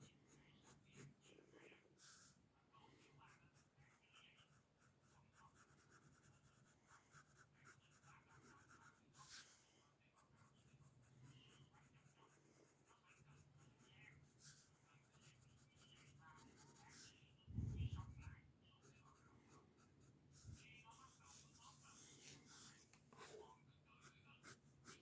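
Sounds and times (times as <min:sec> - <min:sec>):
pencil scratching on paper: 0:00.0 - 0:02.4, 0:03.0 - 0:09.6, 0:10.2 - 0:25.0.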